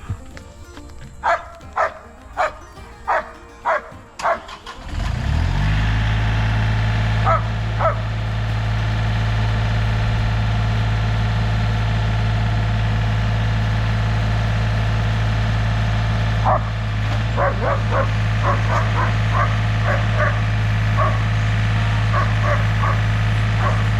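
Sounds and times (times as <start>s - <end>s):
diesel tractor engine idling: 0.0s - 23.9s
dog barking: 1.2s - 4.7s, 7.2s - 8.1s, 16.4s - 23.9s.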